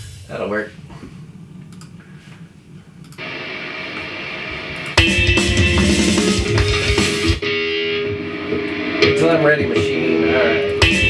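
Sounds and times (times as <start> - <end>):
rock drums: 0.0 - 0.5, 3.2 - 11.0
electric guitar wash: 3.2 - 11.0.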